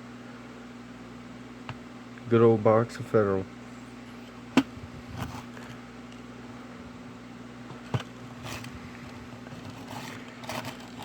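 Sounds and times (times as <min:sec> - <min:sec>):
steady low hum: 0:00.0 - 0:11.0
faint handling rustles: 0:07.7 - 0:11.0.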